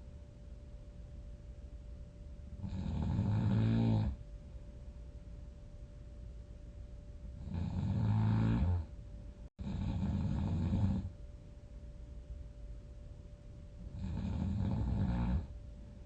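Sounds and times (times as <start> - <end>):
person snoring loudly: 2.6 - 4.2, 7.4 - 8.9, 9.6 - 11.1, 13.9 - 15.5.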